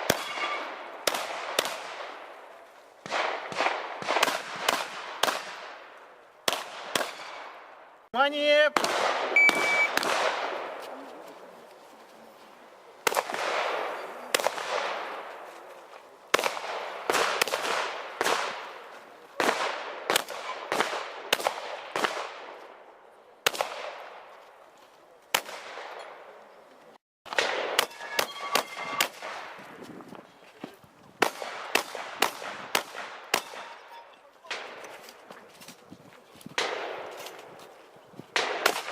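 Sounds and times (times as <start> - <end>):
shotgun shots echoing: 0.0 - 2.4, 3.0 - 7.8, 8.7 - 10.8, 13.0 - 15.4, 16.3 - 18.8, 19.4 - 22.6, 27.3 - 29.6, 31.2 - 33.9, 38.4 - 38.9.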